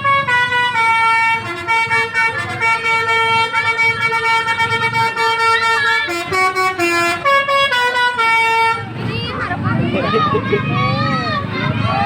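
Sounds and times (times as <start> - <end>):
musical air horn playing a tune: 0.0 - 8.9.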